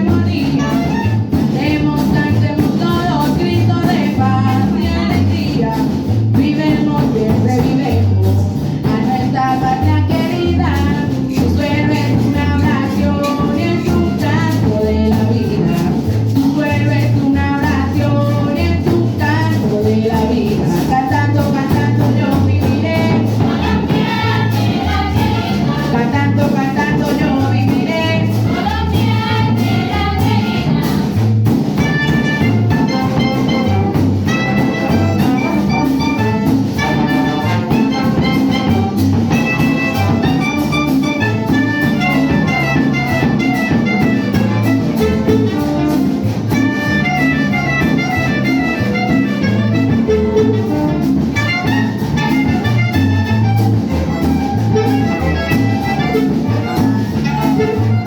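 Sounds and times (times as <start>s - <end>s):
symphony orchestra playing: 0.0s - 1.7s, 31.7s - 58.0s.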